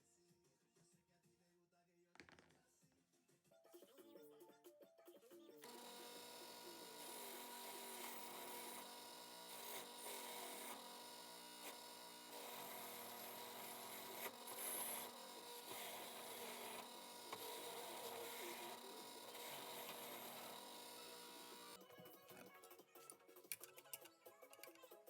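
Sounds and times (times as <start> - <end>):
electrical hum: 5.6 - 21.8.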